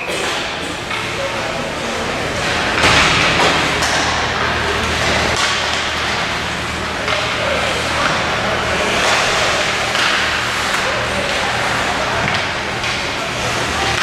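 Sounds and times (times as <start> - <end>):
rink crowd noise rushing: 0.0 - 14.0
low hum: 0.8 - 14.0
sticks and puck knocking: 8.0 - 13.2.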